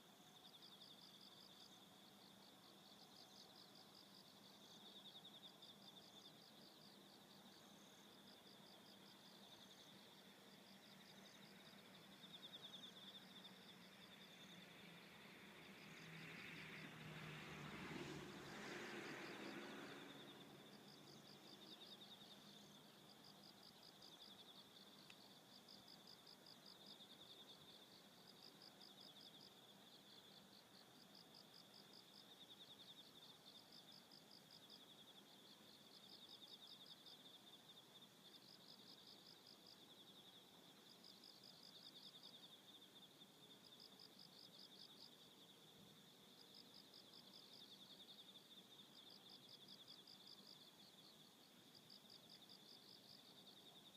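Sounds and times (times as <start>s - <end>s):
insects chirping: 0.0s - 53.9s.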